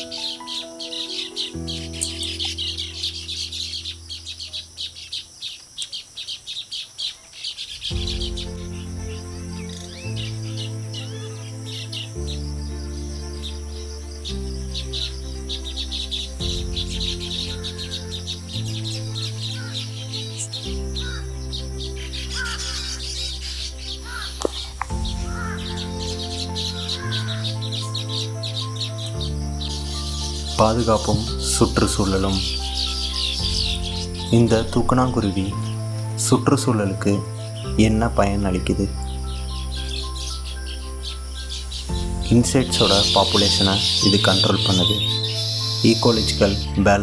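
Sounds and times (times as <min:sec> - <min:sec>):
background music of low chords: 0:00.0 - 0:05.2, 0:07.8 - 0:47.0
weaver birds chattering: 0:00.0 - 0:47.0.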